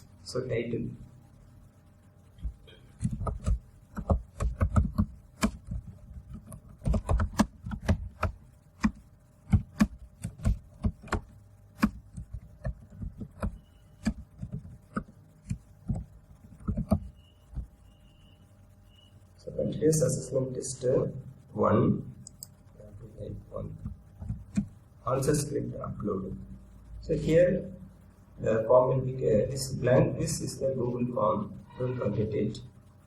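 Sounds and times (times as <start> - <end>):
computer keyboard typing: 2.9 - 17.7.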